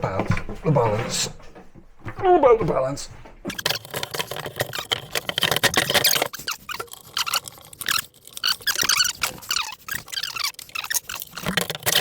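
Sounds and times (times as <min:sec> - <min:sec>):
squeaking and clicking of cabinet fittings: 0:03.4 - 0:12.0.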